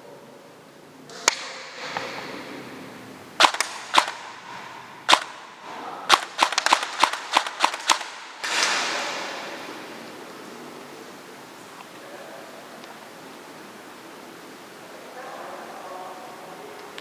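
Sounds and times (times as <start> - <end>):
airsoft gun shots: 3.4 - 9.6.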